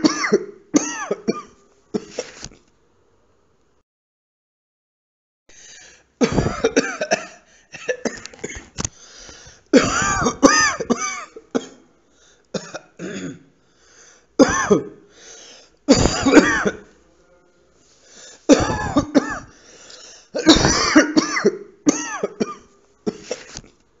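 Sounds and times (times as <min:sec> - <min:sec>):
person coughing: 0:00.0 - 0:02.4, 0:06.2 - 0:08.8, 0:09.7 - 0:11.9, 0:12.6 - 0:13.5, 0:14.4 - 0:15.0, 0:15.9 - 0:16.9, 0:18.5 - 0:23.6.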